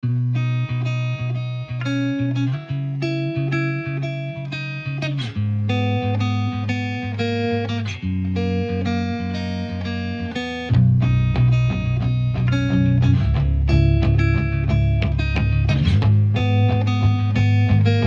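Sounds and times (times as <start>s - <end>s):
plucked guitar tune: 0.0s - 18.0s
steady bass line: 8.0s - 18.0s.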